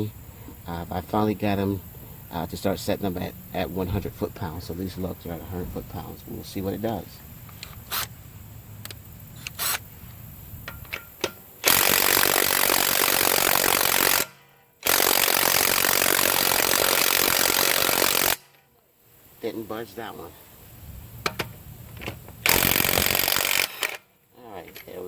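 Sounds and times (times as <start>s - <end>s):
impact wrench hammering: 10.7s - 18.6s, 21.2s - 21.6s, 22.4s - 24.0s.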